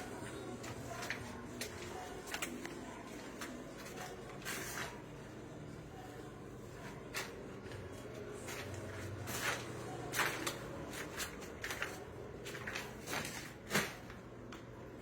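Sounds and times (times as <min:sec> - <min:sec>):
shuffling and rustling: 0:06.7 - 0:14.7.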